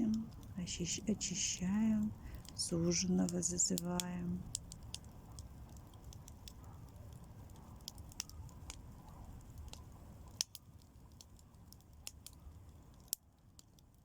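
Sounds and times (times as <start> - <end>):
bonfire crackling and popping: 0.0 - 14.0.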